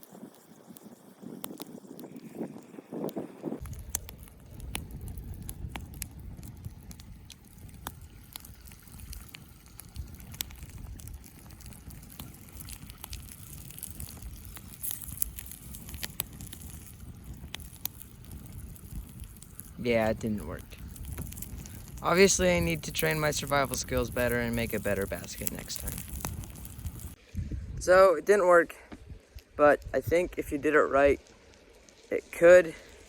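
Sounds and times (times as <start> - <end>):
wind rumble on microphone: 0.0 - 28.1, 28.9 - 31.3
fire crackling and popping: 0.0 - 33.0.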